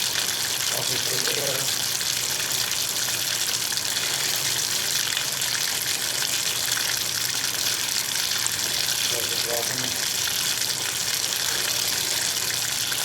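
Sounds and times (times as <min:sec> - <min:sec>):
water running with low hiss: 0:00.0 - 0:13.0.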